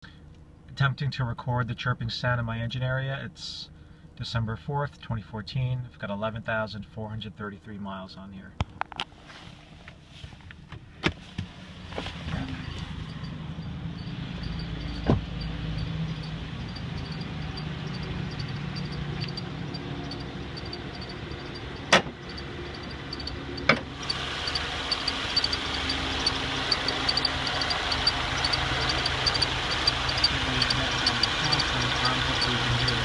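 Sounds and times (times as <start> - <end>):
car engine running: 10.5 - 33.0
high-pitched engine chirp: 12.4 - 33.0
sharp clicks or knocks: 21.8 - 22.2.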